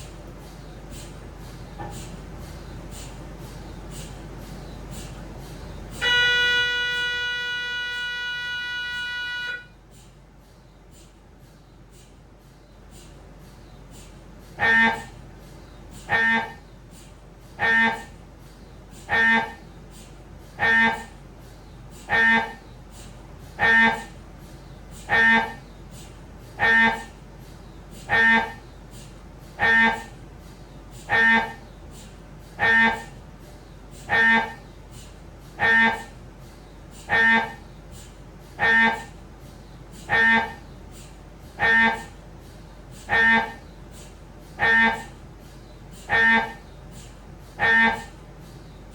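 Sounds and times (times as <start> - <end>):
mri scanner pitched buzz: 0.0 - 48.9.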